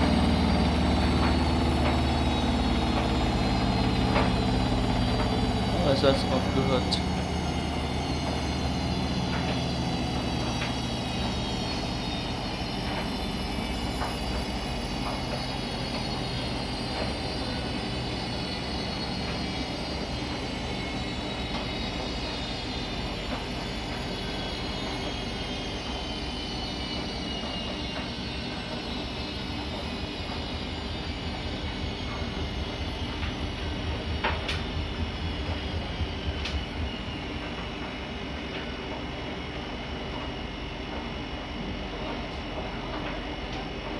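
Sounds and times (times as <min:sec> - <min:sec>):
washing machine motor whine: 0:00.0 - 0:43.9
low rumble: 0:31.2 - 0:37.6.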